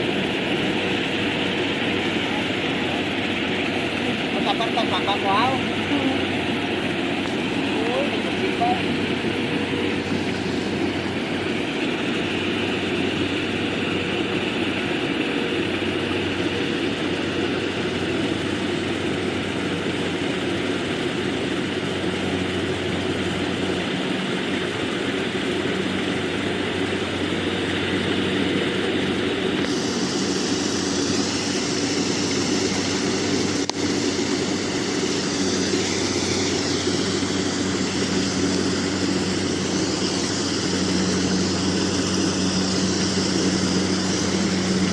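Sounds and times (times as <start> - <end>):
harvester engine hum: 0.0 - 44.9
high hiss: 29.6 - 44.9.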